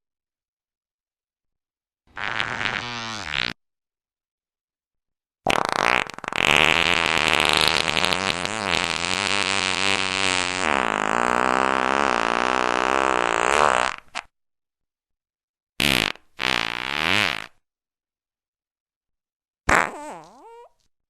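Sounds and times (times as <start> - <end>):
fart sound effect: 2.1 - 3.6, 5.5 - 14.3, 15.8 - 17.6, 19.7 - 20.8.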